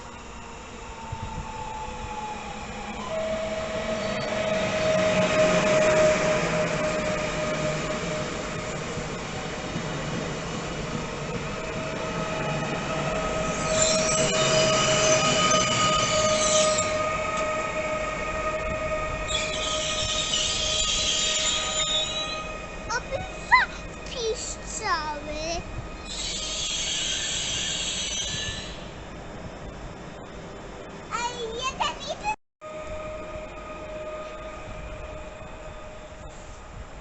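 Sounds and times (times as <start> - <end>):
train rumbling with whining tone: 0.0 - 37.0
high-pitched wheel squeal: 11.9 - 24.6, 25.7 - 28.9.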